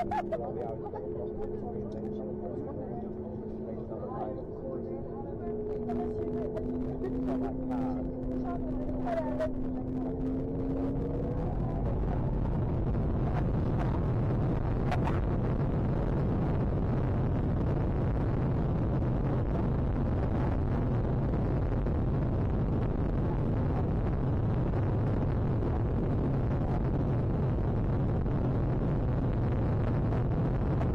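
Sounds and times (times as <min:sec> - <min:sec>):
jet engines deep rushing: 0:00.0 - 0:30.9.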